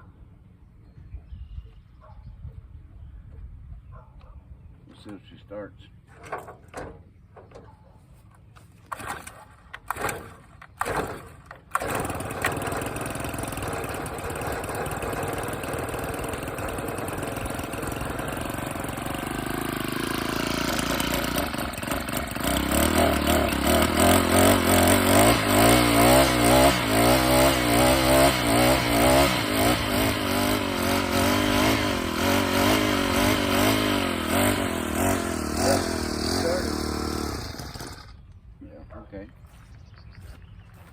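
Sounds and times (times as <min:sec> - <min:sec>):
starter cord pulls: 0:08.8 - 0:26.5
string trimmer engine running: 0:08.8 - 0:38.3.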